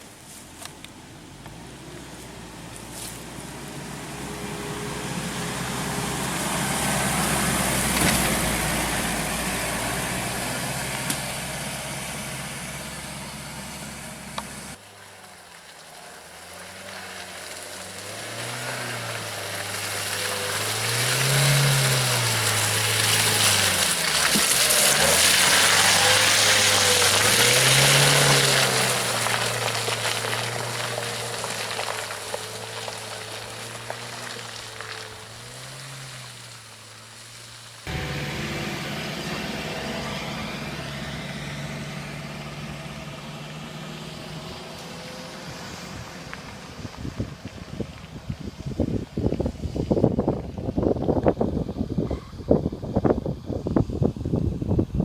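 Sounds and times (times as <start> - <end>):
tyres churning mud: 1.3 - 49.3
engine revving: 3.0 - 14.8, 16.1 - 36.7, 37.8 - 46.9.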